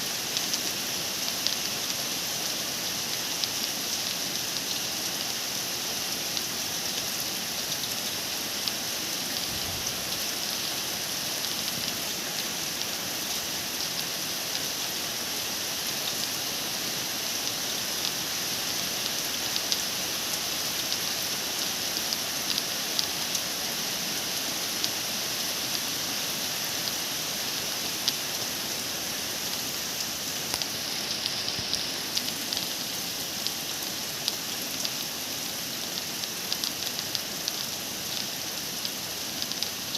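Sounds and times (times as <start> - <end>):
steady rain falling: 0.0 - 39.9
raindrops ticking on surfaces: 0.1 - 39.9.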